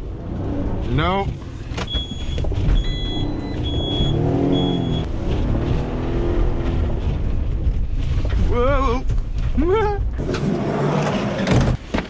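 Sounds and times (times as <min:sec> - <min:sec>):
van engine revving: 0:00.0 - 0:08.2
high warning chime beeps: 0:01.9 - 0:05.1.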